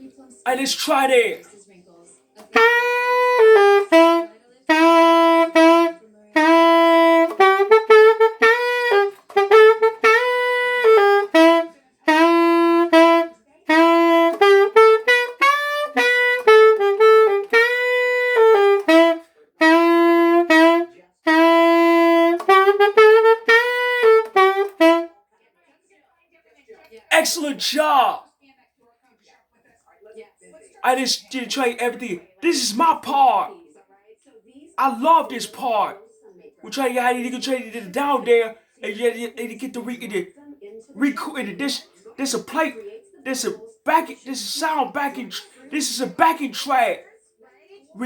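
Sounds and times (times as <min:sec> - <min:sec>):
saxophone melodic phrases: 0:02.4 - 0:25.1, 0:30.9 - 0:33.2.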